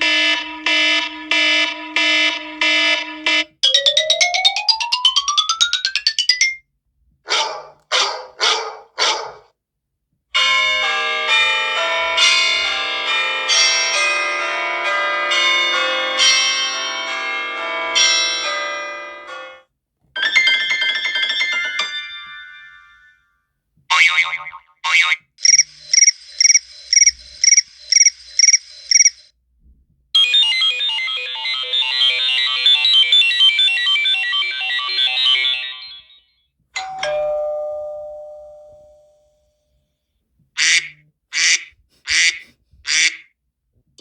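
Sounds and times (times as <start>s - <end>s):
dense trilling ringtone: 0.0s - 6.6s, 25.4s - 29.3s, 30.2s - 37.8s
phone quick repeated beeps: 25.4s - 29.3s
short chirps: 25.4s - 29.3s
phone chime ringing out: 30.2s - 39.5s.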